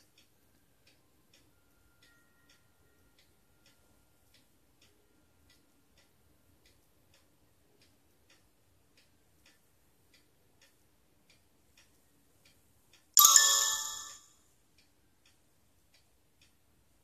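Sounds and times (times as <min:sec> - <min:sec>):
faint clock ticking: 0:00.0 - 0:17.0
loud chime: 0:13.2 - 0:14.3.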